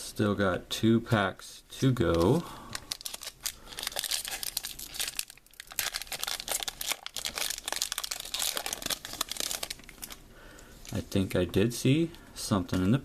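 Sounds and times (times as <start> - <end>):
foil pack tearing and crinkling: 2.8 - 10.2.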